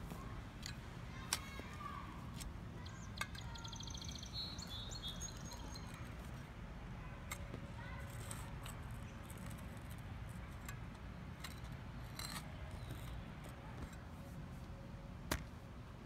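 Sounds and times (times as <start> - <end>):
shovel scraping soil: 7.3 - 10.7, 11.3 - 14.0.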